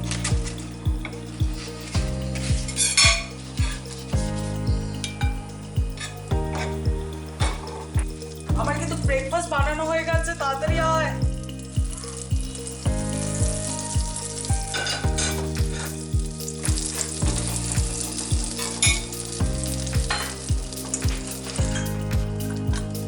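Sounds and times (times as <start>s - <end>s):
background music with beat: 0.0s - 23.0s
batter sizzling in pan: 11.6s - 23.0s.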